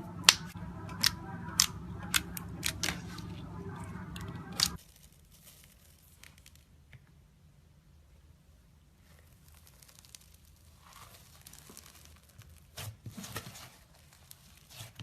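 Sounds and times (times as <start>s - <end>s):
steady low hum: 0.0s - 4.8s
faint crackles: 0.1s - 7.0s, 9.0s - 15.0s.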